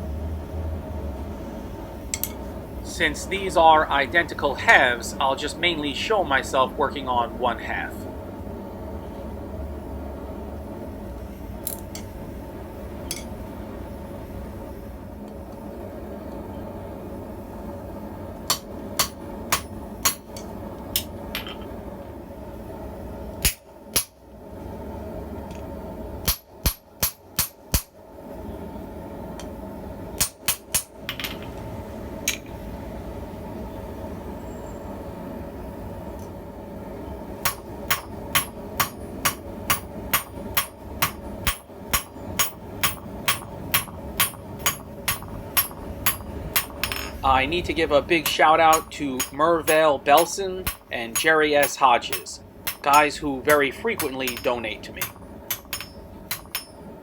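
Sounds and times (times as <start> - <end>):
steady hum: 0.0 - 57.0
hammer striking steel on anvil: 2.2 - 2.4, 13.1 - 13.4, 18.5 - 21.6, 23.4 - 24.2, 26.2 - 27.9, 30.2 - 31.4, 37.4 - 47.2, 47.9 - 56.9.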